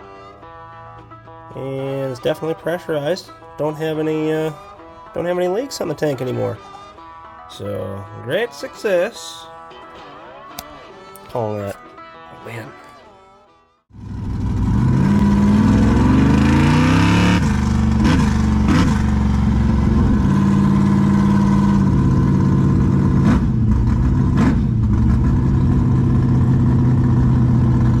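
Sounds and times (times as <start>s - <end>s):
car engine revving: 13.9s - 28.0s.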